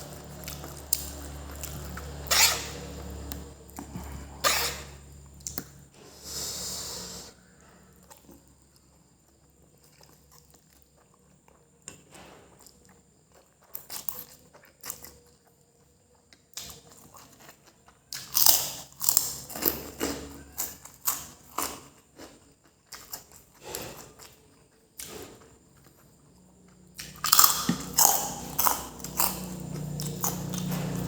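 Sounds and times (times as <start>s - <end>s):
wet chewing and biting: 27.0s - 31.0s.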